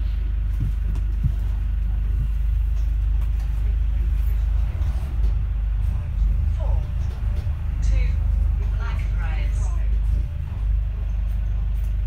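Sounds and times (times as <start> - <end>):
bus engine rumbling: 0.0 - 12.0
faint low knocks: 0.5 - 11.6.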